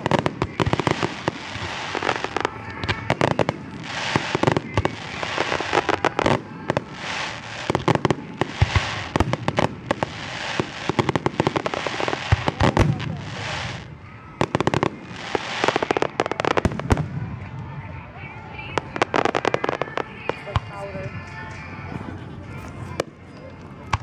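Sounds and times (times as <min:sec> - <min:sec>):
fireworks hissing: 0:00.0 - 0:17.1
fireworks bangs and crackling: 0:00.0 - 0:21.9, 0:22.5 - 0:24.0.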